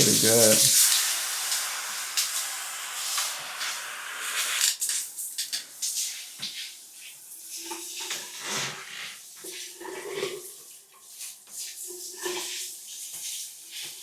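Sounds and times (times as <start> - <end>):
water draining down shower drain: 0.0 - 5.5.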